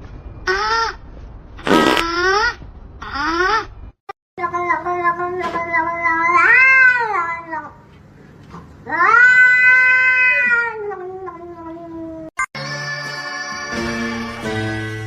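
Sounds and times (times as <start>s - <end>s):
cat yowling: 8.9s - 12.3s.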